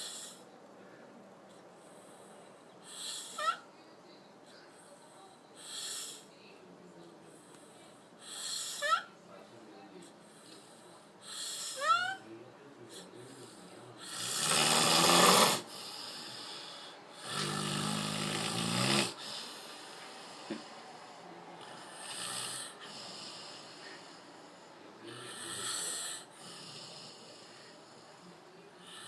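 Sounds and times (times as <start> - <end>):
person snoring: 14.0 - 20.6.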